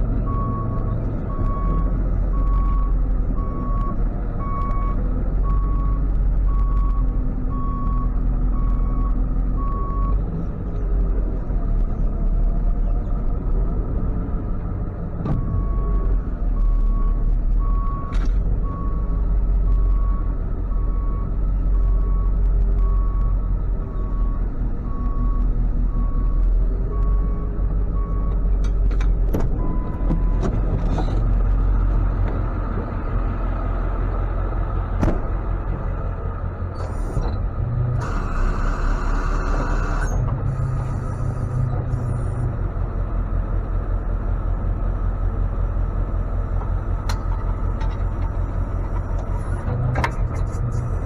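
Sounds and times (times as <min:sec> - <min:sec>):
truck engine rumbling: 0:00.0 - 0:51.0
reversing beeper: 0:38.0 - 0:42.3.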